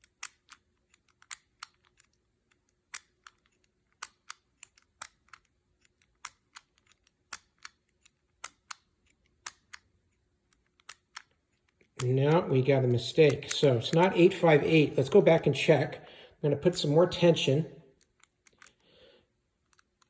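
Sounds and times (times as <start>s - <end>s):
padlock number wheels clicking: 0.0s - 15.2s.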